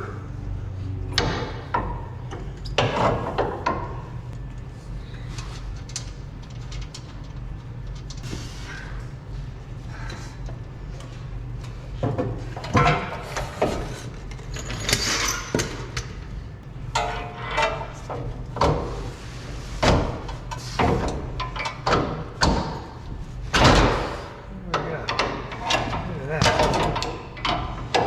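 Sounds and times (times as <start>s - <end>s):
metal clanks and knocks: 16.9s - 19.1s, 19.8s - 28.0s.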